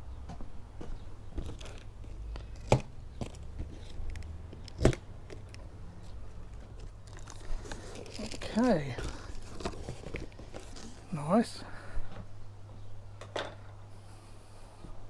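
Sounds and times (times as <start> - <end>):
handling clicks and rustles: 1.4 - 11.2.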